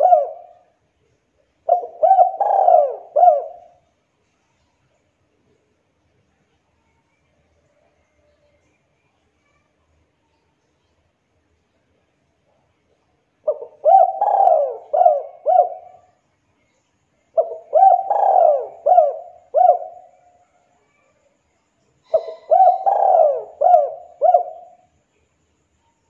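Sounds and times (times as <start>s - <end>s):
dove cooing: 0.0s - 0.7s, 1.6s - 3.8s, 13.4s - 16.1s, 17.4s - 20.4s, 22.1s - 24.8s.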